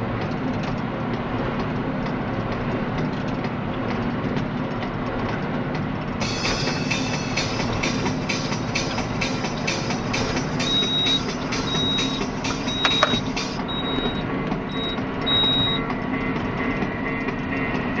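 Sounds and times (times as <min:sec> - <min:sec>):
tractor engine running: 0:00.0 - 0:18.0
baler knocking: 0:06.2 - 0:15.8
short high electronic beep: 0:10.6 - 0:15.8.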